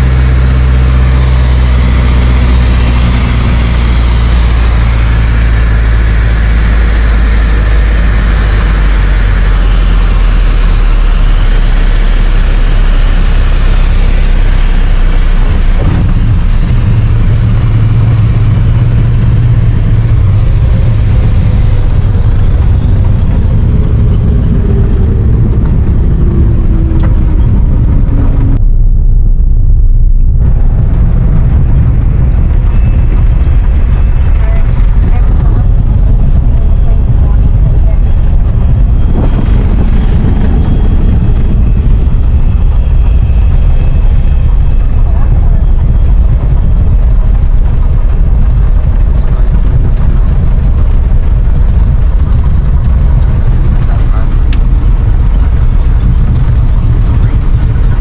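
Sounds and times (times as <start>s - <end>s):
light aircraft engine and propeller: 0.0s - 28.6s, 30.2s - 58.0s.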